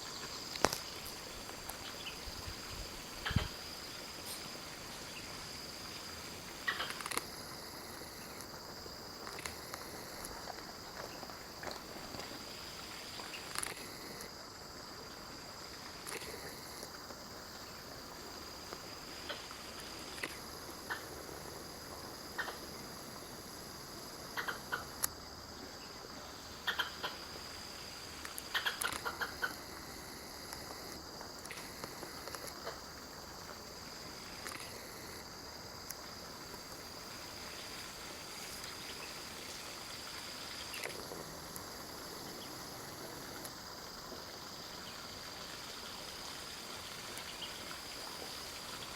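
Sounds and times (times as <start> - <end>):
insects buzzing: 0.0 - 48.9.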